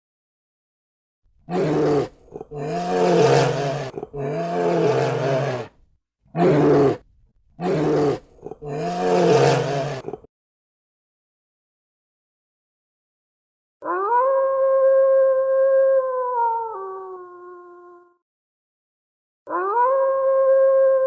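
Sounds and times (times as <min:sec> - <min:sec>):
large animal roaring: 0:01.5 - 0:07.0, 0:07.6 - 0:10.3.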